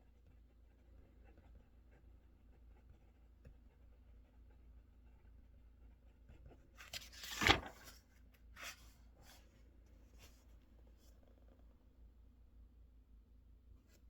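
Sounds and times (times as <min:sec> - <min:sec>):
paper rustling: 0:06.8 - 0:10.5.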